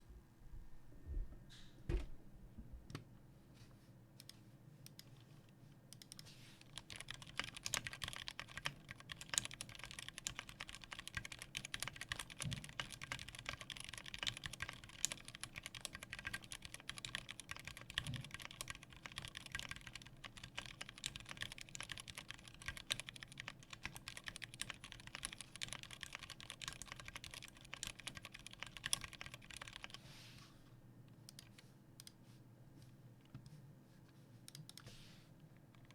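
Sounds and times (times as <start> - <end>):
typing on mechanical keyboard: 6.0 - 30.0.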